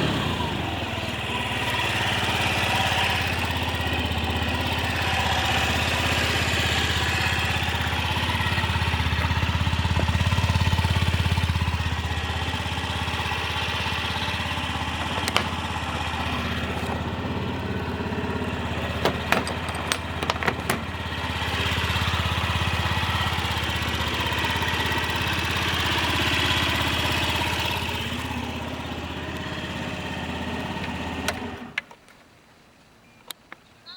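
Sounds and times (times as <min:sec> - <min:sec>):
scooter engine running: 0:00.0 - 0:31.8.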